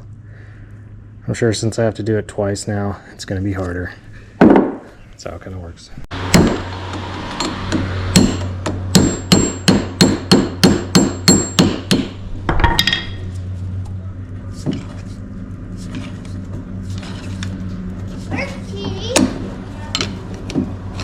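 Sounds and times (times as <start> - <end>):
hammer striking metal chisel: 6.3 - 13.2.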